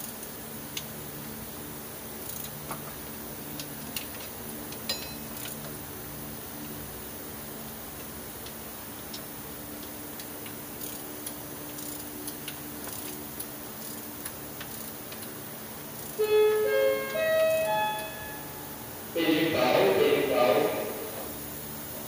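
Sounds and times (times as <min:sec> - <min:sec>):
short electronic melody: 0:16.2 - 0:19.8.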